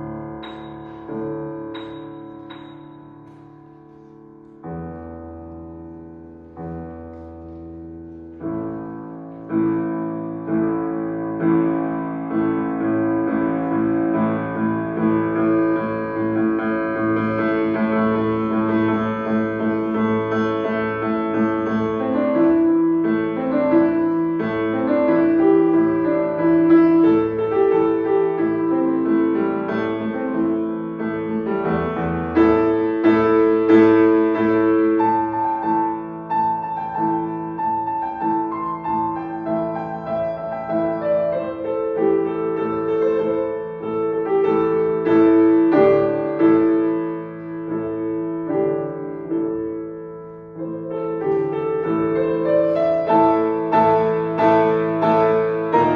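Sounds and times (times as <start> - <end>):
piano piece: 0.0 - 55.9.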